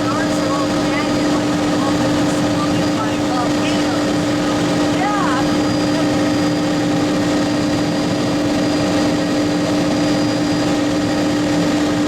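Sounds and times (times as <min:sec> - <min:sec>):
helicopter engine and rotor roar: 0:00.0 - 0:12.0.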